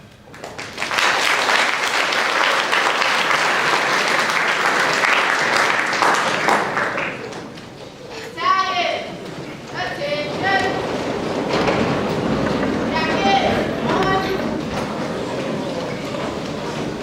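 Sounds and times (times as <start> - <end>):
audience applauding: 0.0 - 8.0.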